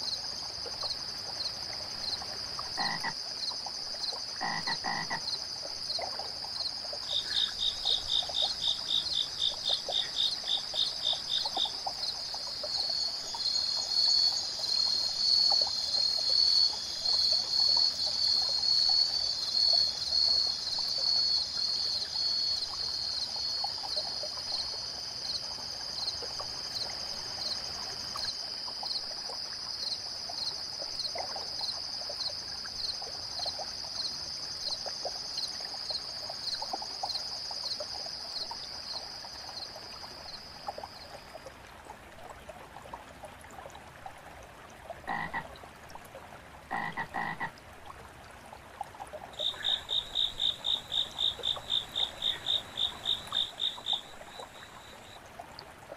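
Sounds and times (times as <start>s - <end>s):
insects chirping: 0.0s - 41.4s, 49.3s - 55.2s
trickling water: 0.0s - 55.9s
frog croaks: 2.0s - 22.6s, 45.0s - 45.6s, 46.7s - 47.6s, 49.3s - 55.2s
high insect trill: 49.4s - 55.2s.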